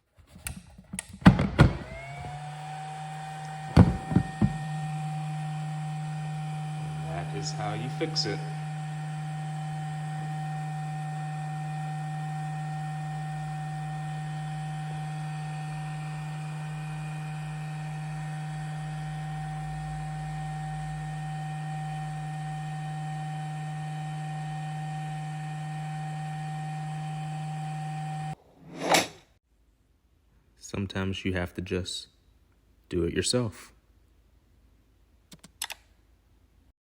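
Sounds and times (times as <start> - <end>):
electrical hum: 1.7 - 28.4.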